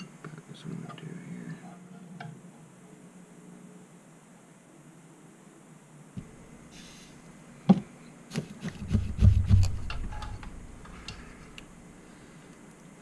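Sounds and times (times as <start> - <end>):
sharp knock: 8.4 - 10.1.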